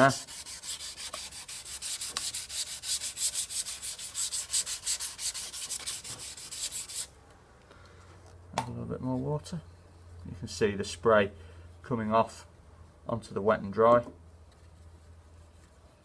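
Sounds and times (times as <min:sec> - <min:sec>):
wet sanding strokes: 0:00.0 - 0:07.1.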